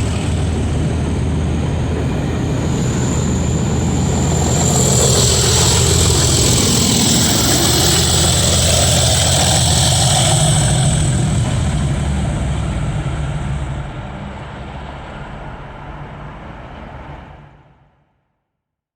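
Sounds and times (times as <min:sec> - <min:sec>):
turbocharger whistle: 0:00.0 - 0:14.2
diesel locomotive engines: 0:00.0 - 0:17.6.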